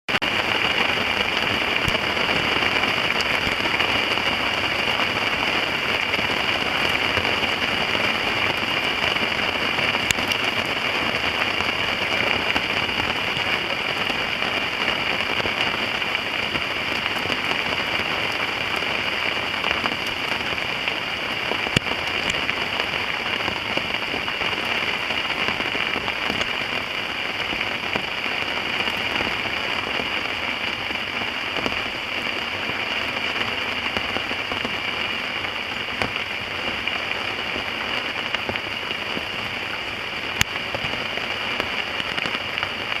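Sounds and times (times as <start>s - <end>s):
heavy rain: 0.1s - 43.0s.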